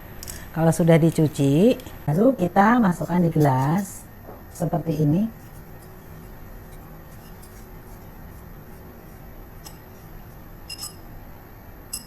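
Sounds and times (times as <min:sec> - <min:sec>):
low room hum: 0:00.0 - 0:12.0
drinking glass clinking: 0:10.7 - 0:11.1.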